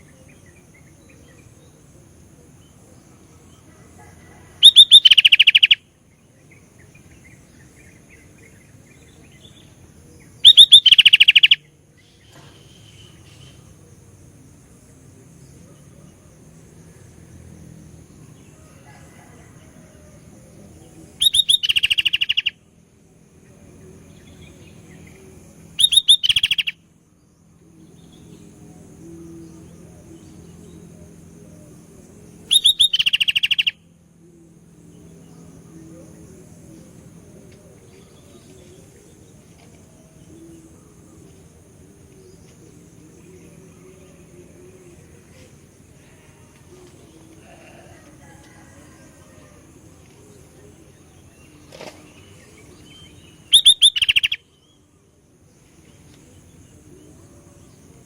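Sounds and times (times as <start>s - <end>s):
faint low hum: 0.0s - 58.0s
bird singing trilling phrases: 4.6s - 13.8s, 20.5s - 47.4s, 50.3s - 54.9s.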